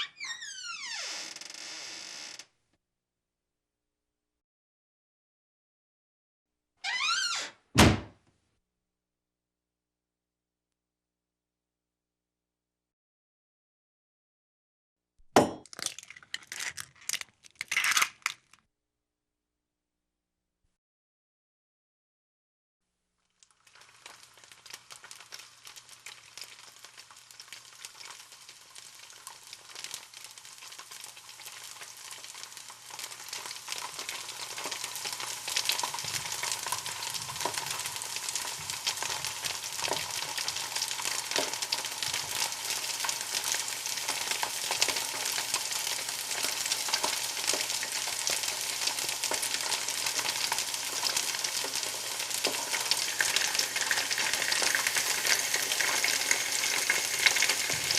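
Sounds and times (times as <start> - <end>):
food sizzling in a pan: 23.2 - 57.9.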